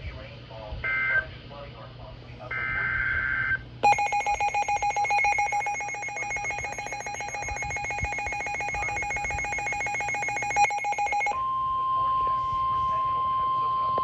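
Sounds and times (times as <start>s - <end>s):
electronic alert tone trilling: 3.8s - 11.4s
steady warning alarm tone: 3.8s - 13.6s.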